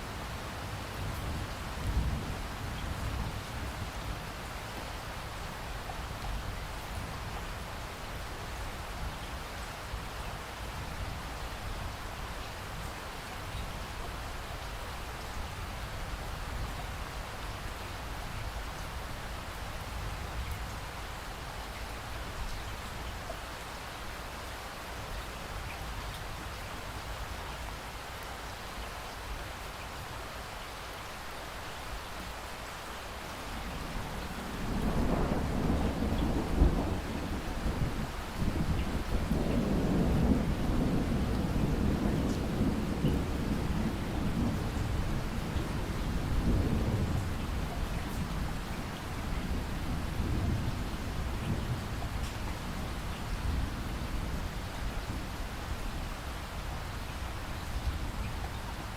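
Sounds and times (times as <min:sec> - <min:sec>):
steady rain: 0:00.0 - 0:58.9
thunder rolling: 0:34.5 - 0:54.4.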